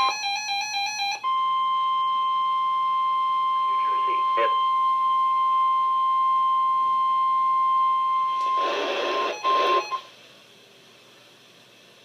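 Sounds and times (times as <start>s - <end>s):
steady alarm beep: 0.0s - 10.1s
radio static: 3.7s - 4.6s, 8.4s - 10.1s.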